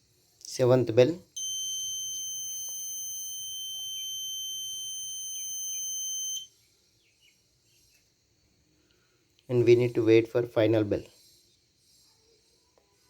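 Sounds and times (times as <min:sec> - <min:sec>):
electronic buzzer alarm tone: 0:01.4 - 0:06.5.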